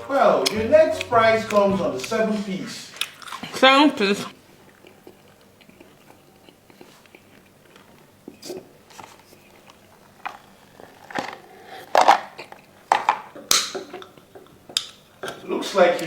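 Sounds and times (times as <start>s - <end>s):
person chewing food: 4.6s - 9.2s.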